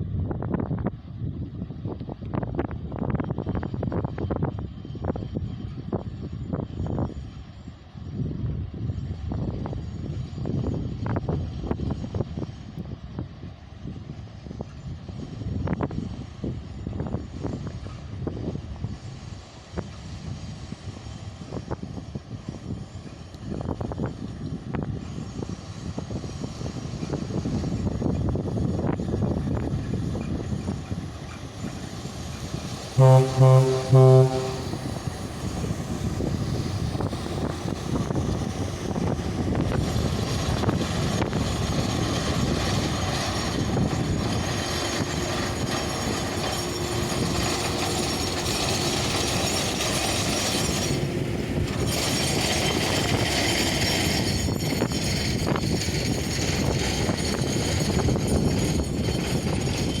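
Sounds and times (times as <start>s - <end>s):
locomotive horn blasts: 33.0s - 35.7s.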